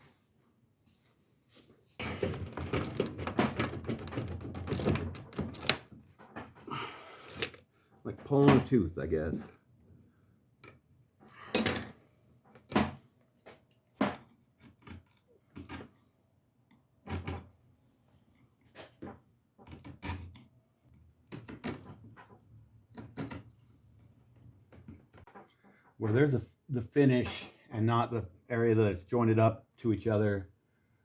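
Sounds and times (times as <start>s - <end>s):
wooden chair creaking and knocking: 2.0s - 9.6s, 10.6s - 16.0s, 17.0s - 17.6s, 18.7s - 26.2s.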